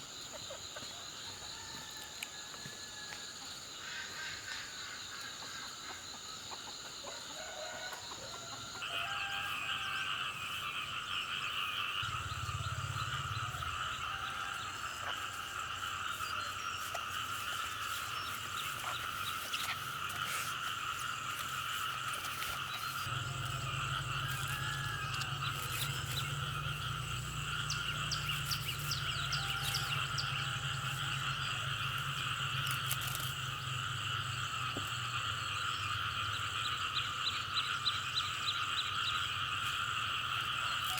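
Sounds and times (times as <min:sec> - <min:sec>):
frogs calling: 0:02.9 - 0:40.9.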